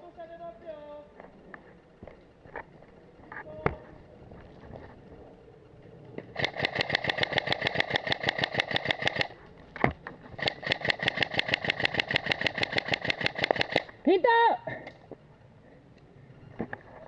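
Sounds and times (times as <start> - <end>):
gearbox motor whine: 0.0 - 14.1
airsoft gun full-auto bursts: 6.3 - 9.4, 10.4 - 14.0.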